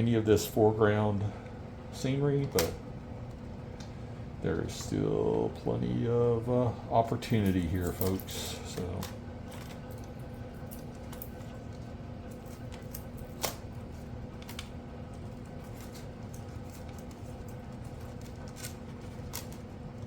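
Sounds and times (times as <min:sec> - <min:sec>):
steady low hum: 0:00.0 - 0:20.0
light clicks and scraping by hand: 0:07.3 - 0:19.7.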